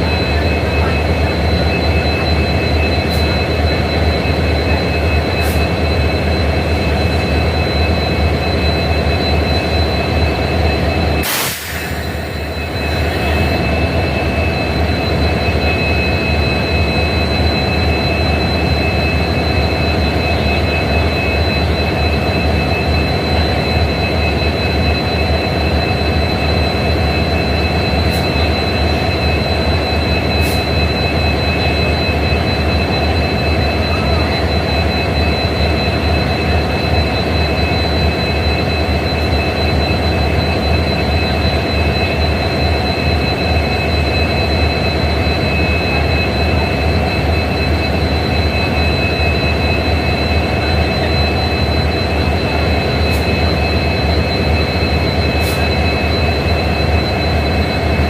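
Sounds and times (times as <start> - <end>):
diesel locomotives idling: 0.0 - 58.0
short burst of noise: 11.2 - 12.4.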